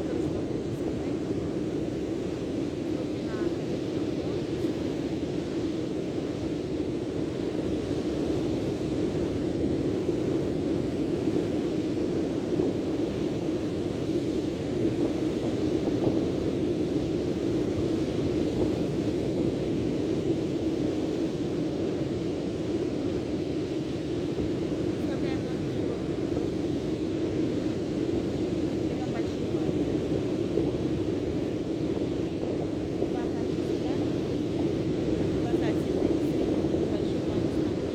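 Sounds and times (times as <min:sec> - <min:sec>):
surf at the seashore: 0:00.0 - 0:37.9
wind: 0:00.0 - 0:37.9.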